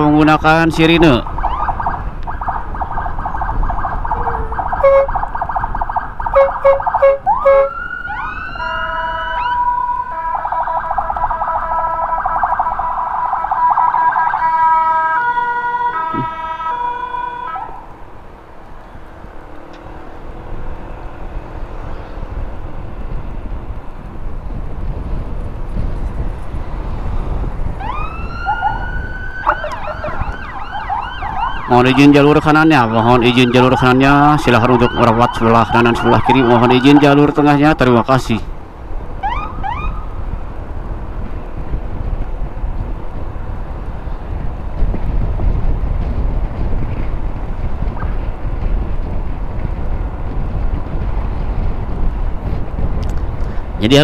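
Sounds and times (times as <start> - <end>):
road noise: 0.0 - 54.0
electronic siren wailing: 1.3 - 17.9, 27.8 - 37.5, 39.2 - 40.2.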